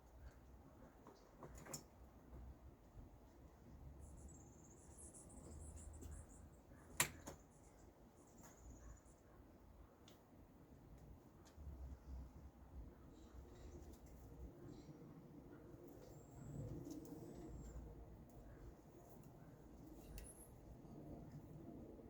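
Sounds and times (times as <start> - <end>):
faint high-pitched chirping trill: 4.0 - 6.9, 7.6 - 9.4.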